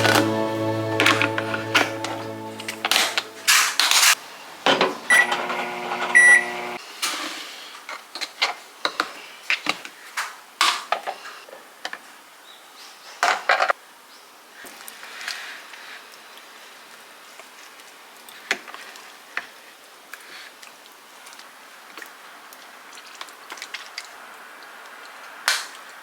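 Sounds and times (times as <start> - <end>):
microwave beeps: 5.1 - 6.8
microwave humming: 5.1 - 6.8.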